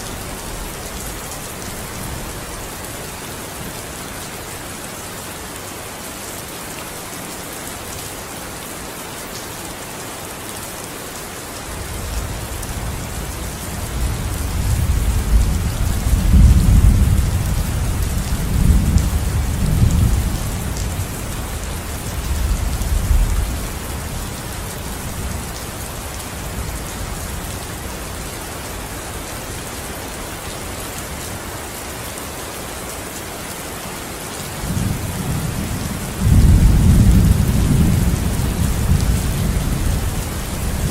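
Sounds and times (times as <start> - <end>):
heavy rain falling: 0.0 - 40.9
thunder rumbling: 34.7 - 40.1.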